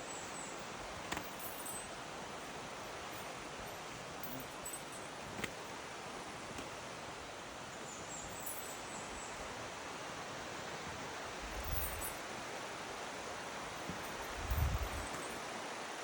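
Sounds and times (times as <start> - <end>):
rustling: 0.0 - 6.9
steady outdoor hiss: 0.0 - 16.0.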